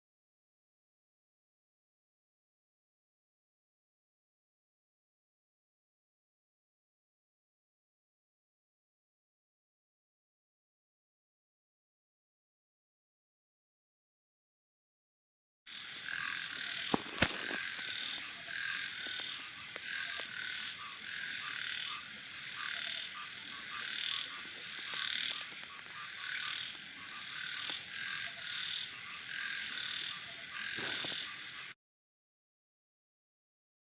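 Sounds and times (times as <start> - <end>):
frogs croaking: 15.7 - 31.8
sharp clicks: 19.0 - 20.4, 24.8 - 26.0.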